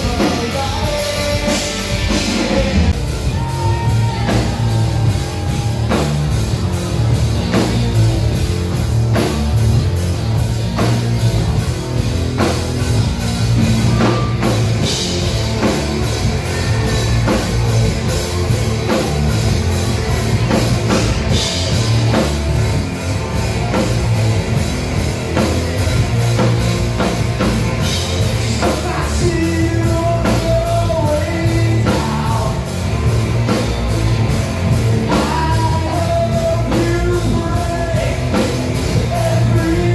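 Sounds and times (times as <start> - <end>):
person singing: 0.0 - 6.2, 28.3 - 32.8, 34.9 - 39.9
rock music: 0.0 - 39.9.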